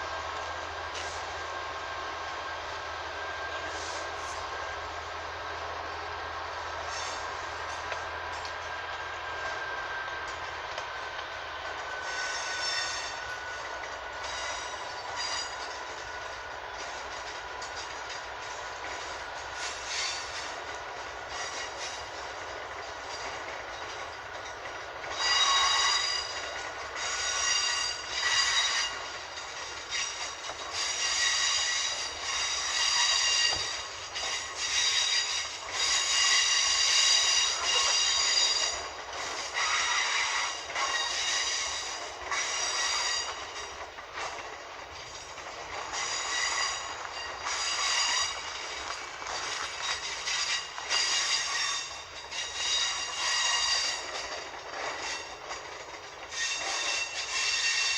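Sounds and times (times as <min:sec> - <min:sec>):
diesel locomotive: 0:00.0 - 0:57.9
train wheels squealing: 0:00.0 - 0:57.9.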